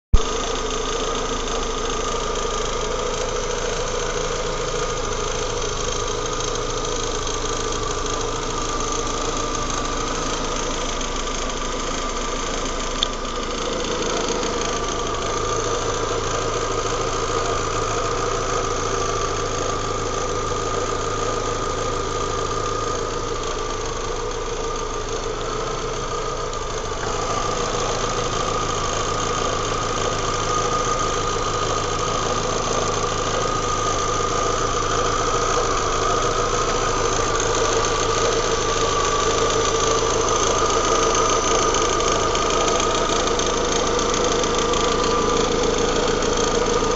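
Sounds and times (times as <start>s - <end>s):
car engine idling with a rattle: 0.1s - 46.9s.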